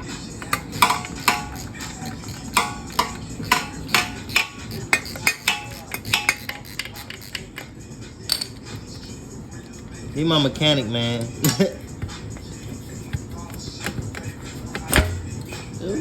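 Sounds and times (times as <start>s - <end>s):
metal tools clinking: 0.0s - 9.8s.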